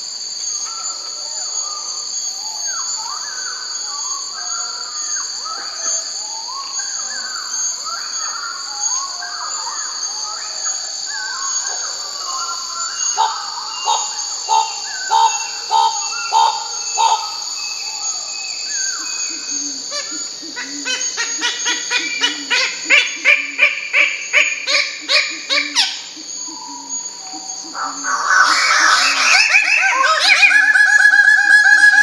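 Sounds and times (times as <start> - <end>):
high insect drone: 0.0 - 32.0
bird calls: 11.1 - 32.0.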